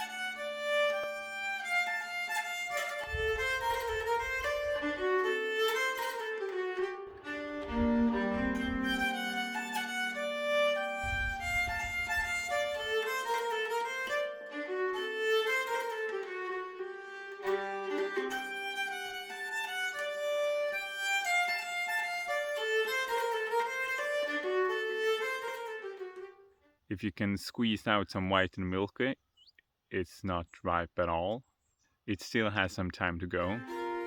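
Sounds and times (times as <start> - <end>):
plucked strings: 0.0 - 26.3, 33.6 - 34.0
fiddle playing lively melody: 0.0 - 26.6, 33.3 - 34.0.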